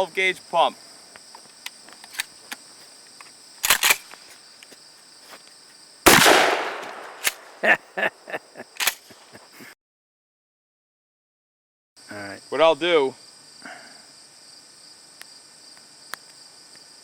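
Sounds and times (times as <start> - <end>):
crickets chirping: 0.0 - 9.8, 12.0 - 17.0
shotgun shot with echo: 6.1 - 7.6.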